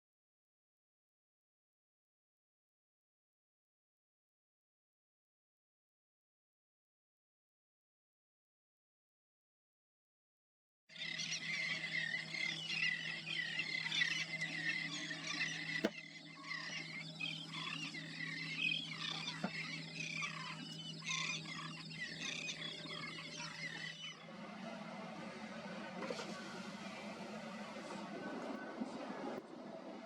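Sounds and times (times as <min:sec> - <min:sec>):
birds chattering: 0:10.9 - 0:24.3
steady low hum: 0:10.9 - 0:30.0.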